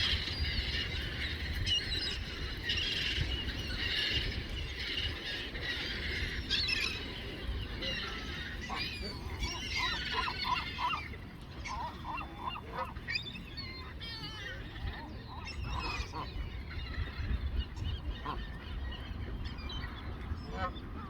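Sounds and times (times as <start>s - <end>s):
geese honking: 5.0s - 16.5s.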